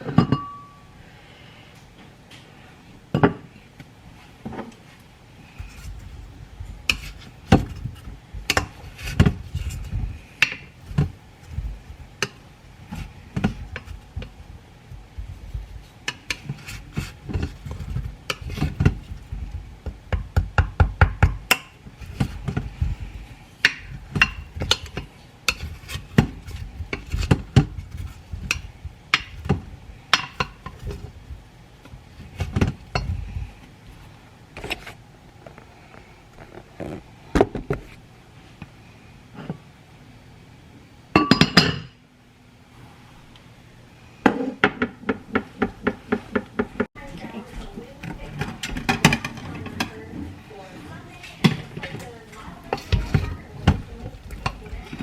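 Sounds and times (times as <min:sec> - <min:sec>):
dull low thuds: 0:05.5 - 0:16.0, 0:16.8 - 0:25.0
utensils clinking against dishes: 0:47.0 - 0:55.0.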